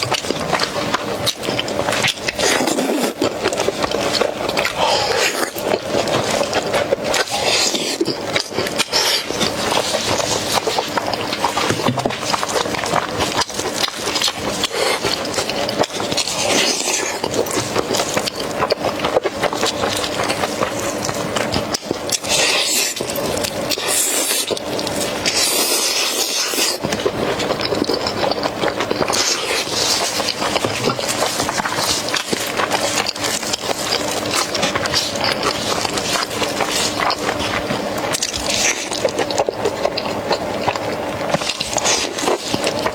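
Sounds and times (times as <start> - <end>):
person chewing food: 0.0 - 42.9.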